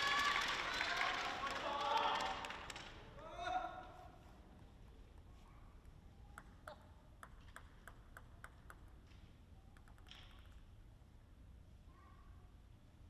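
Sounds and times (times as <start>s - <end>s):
table tennis ball bouncing: 6.3s - 10.7s.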